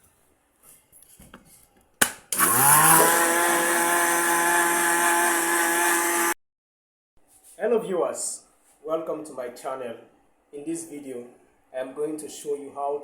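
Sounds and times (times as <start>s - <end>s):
blender switch click: 2.0s - 6.1s
blender motor whining: 2.3s - 6.4s.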